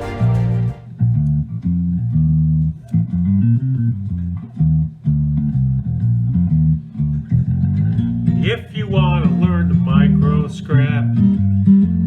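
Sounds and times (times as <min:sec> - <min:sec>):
bass guitar riff with guitar: 0:00.0 - 0:12.0.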